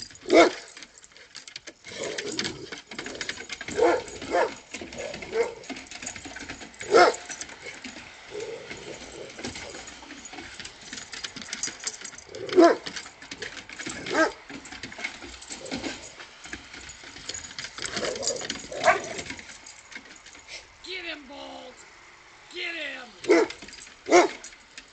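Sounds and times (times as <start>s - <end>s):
clicks and scratching: 0.0s - 20.8s, 23.2s - 24.9s
dog barking: 0.3s - 0.6s, 3.8s - 5.6s, 6.9s - 7.2s, 12.6s - 12.8s, 14.1s - 14.4s, 18.7s - 19.2s, 23.2s - 24.4s.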